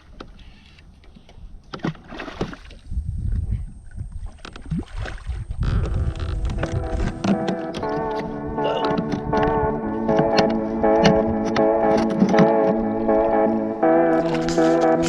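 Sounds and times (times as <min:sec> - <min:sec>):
knocks and clicks on a kayak: 0:00.0 - 0:02.8, 0:05.5 - 0:13.4
wind rumble on microphone: 0:02.4 - 0:07.4
water sounds: 0:03.8 - 0:15.0.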